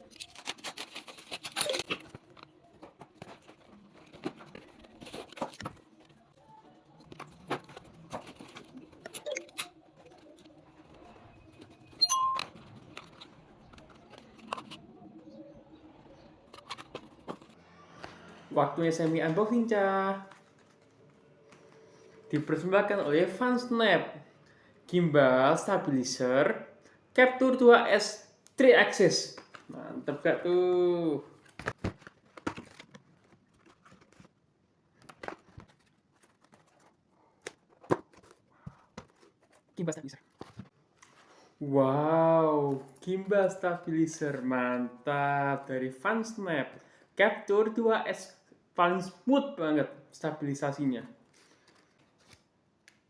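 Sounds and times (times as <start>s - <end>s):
packaging rustling: 17.1s - 23.8s, 28.4s - 41.6s, 51.2s - 53.0s.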